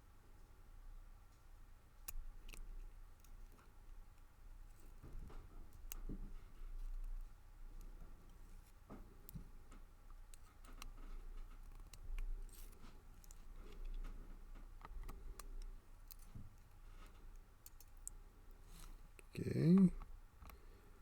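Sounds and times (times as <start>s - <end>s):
small metallic clicks and taps: 4.7s - 19.3s.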